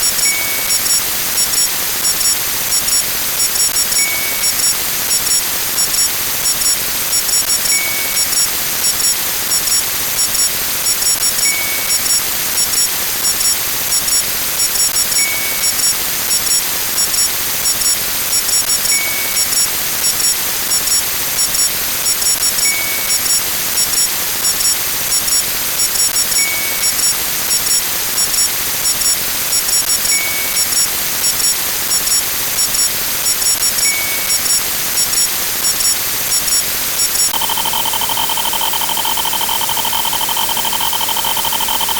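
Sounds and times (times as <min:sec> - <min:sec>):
rapid electronic blips: 0:37.3 - 0:41.9
short beep: 0:37.3 - 0:41.9
thin high tone: 0:37.4 - 0:41.9.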